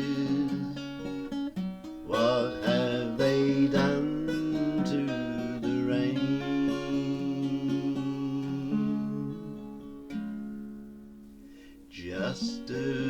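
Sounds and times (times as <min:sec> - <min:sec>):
person singing: 0:00.0 - 0:01.2, 0:02.0 - 0:09.8, 0:11.9 - 0:13.0
acoustic guitar strumming: 0:00.0 - 0:13.0.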